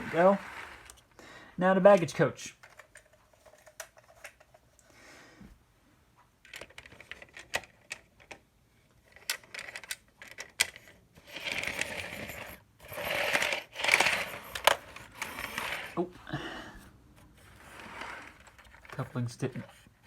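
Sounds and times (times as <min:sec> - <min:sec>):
model coach rolling on track: 0:00.0 - 0:00.9.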